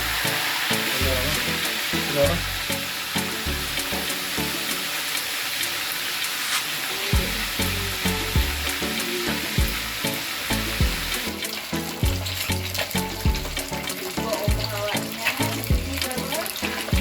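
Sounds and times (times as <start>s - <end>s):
music with a steady beat: 7.2s - 17.0s.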